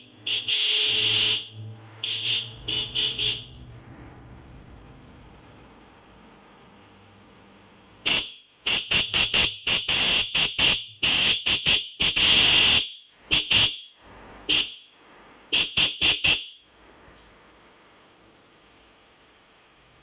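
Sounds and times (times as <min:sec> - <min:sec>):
electric motorcycle horn honks: 0:00.0 - 0:03.7, 0:08.0 - 0:13.9, 0:14.5 - 0:14.9, 0:15.5 - 0:16.6.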